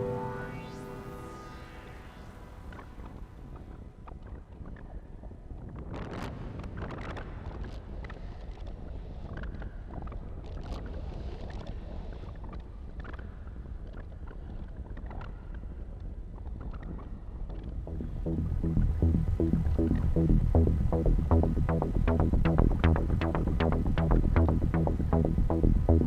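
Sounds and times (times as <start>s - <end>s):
synth noise texture: 0.0s - 3.3s, 17.9s - 26.0s.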